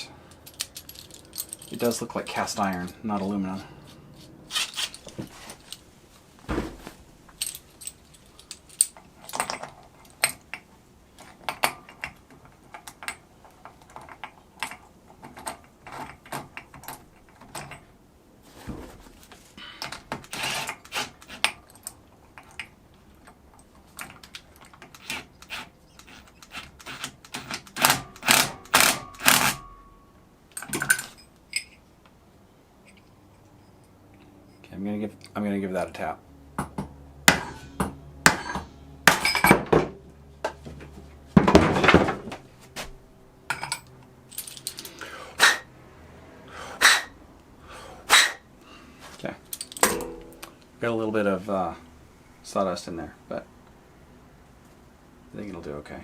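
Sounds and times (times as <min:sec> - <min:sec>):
metal tools clinking and clanking: 0:00.3 - 0:03.3, 0:04.5 - 0:05.8, 0:07.3 - 0:17.9, 0:29.0 - 0:31.9, 0:37.3 - 0:39.9, 0:43.5 - 0:45.1, 0:49.5 - 0:50.6
metallic ring: 0:29.1 - 0:30.2, 0:37.3 - 0:39.6, 0:43.5 - 0:44.9, 0:49.6 - 0:50.6.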